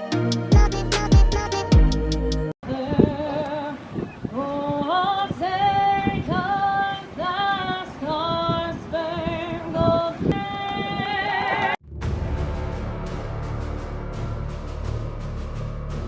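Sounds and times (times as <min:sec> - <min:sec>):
steady musical accompaniment: 0:00.0 - 0:02.5, 0:11.9 - 0:16.0
voice-like high melody: 0:00.5 - 0:02.2.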